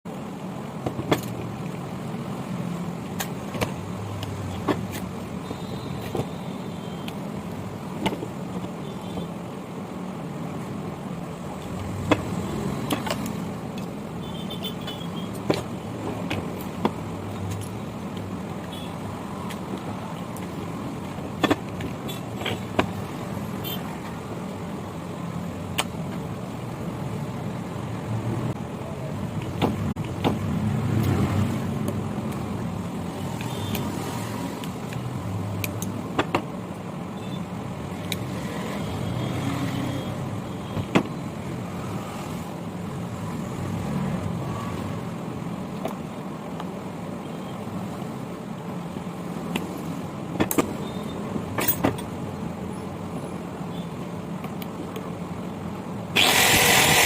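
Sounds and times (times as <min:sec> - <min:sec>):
sharp clicks and taps: 0:34.6 - 0:36.5.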